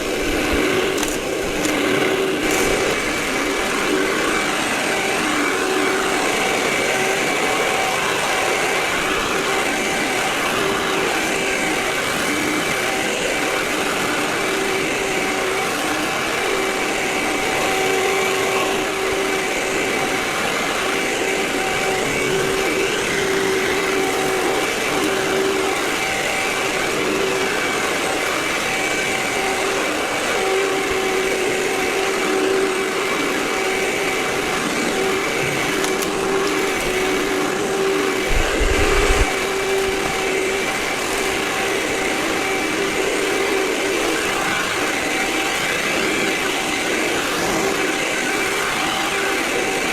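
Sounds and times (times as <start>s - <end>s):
vacuum cleaner running: 0.0s - 49.9s.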